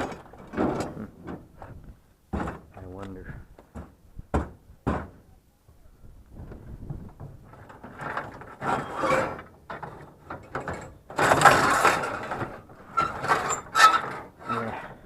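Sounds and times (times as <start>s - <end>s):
scrap metal rattling and scraping: 0.0s - 3.0s, 7.0s - 15.0s.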